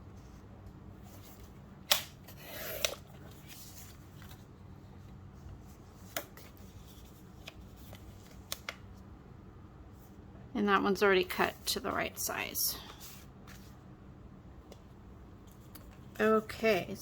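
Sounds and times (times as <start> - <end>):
paper sliding rustle: 2.3 - 4.5.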